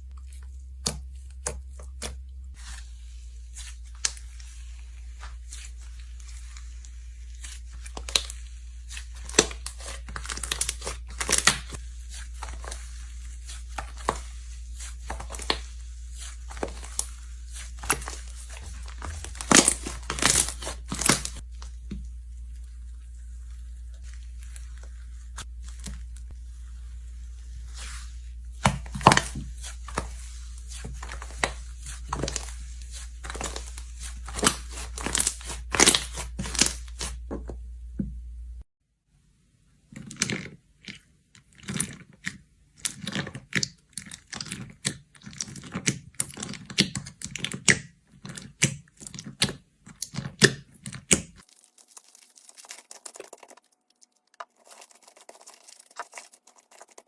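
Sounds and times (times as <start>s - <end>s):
slime crackling and popping: 5.1s - 21.7s, 27.7s - 37.3s, 48.4s - 57.0s.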